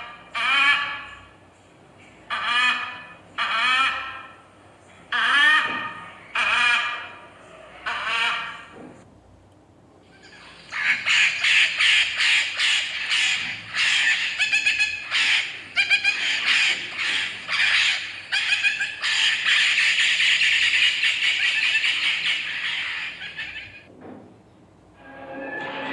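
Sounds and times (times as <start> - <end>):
macaw parrot squawking: 10.2 - 23.9.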